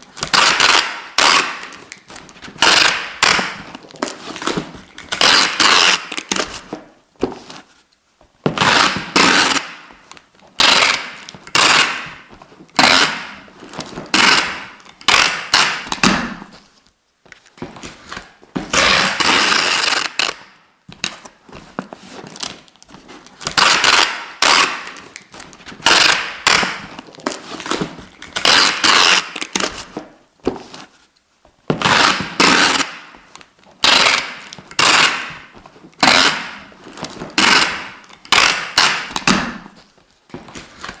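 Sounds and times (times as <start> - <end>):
adhesive tape pulled off roll: 0.2 - 6.6, 8.6 - 9.9, 18.7 - 20.5, 23.4 - 29.8, 31.8 - 33.1.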